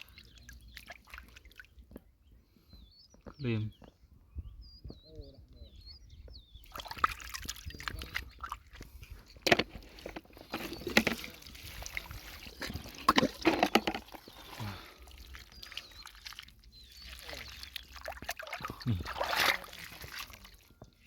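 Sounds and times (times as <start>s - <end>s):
water sloshing and splashing: 0.0s - 2.0s, 6.6s - 21.0s.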